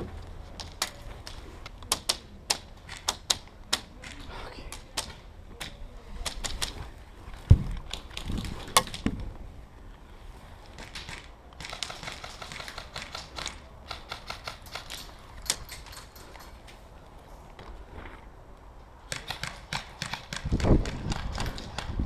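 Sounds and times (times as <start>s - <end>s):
airsoft guns firing: 10.8s - 15.0s, 19.1s - 22.0s.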